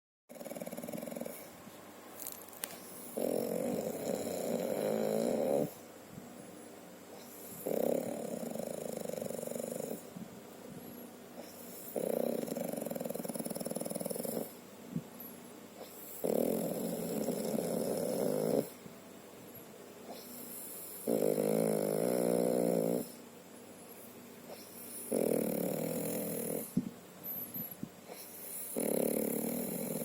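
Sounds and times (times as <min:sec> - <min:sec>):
quiet breathing: 0:02.6 - 0:21.3, 0:23.0 - 0:30.0
person snoring loudly: 0:03.2 - 0:05.8, 0:16.2 - 0:18.7, 0:21.0 - 0:23.1, 0:25.1 - 0:26.7, 0:28.7 - 0:30.0.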